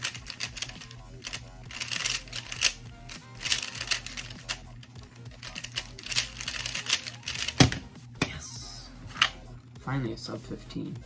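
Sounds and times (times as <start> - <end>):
plastic puzzle cube clicking: 0.0 - 7.8.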